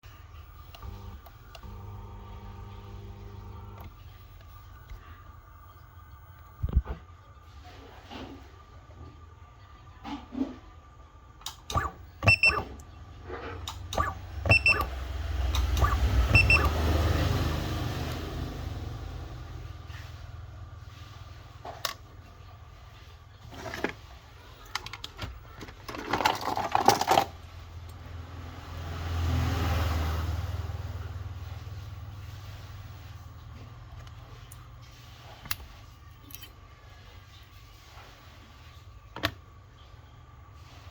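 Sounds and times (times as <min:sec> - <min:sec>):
steady low hum: 0:00.0 - 0:09.8
short double beep: 0:14.0 - 0:14.9, 0:15.8 - 0:16.7.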